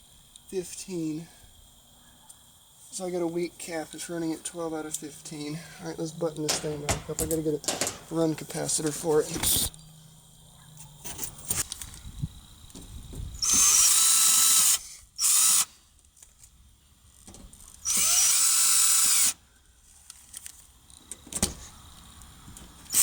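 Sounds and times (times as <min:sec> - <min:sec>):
handling clatter: 0:06.4 - 0:09.9
cordless drill whining: 0:09.2 - 0:09.8, 0:13.4 - 0:15.8, 0:17.7 - 0:19.4.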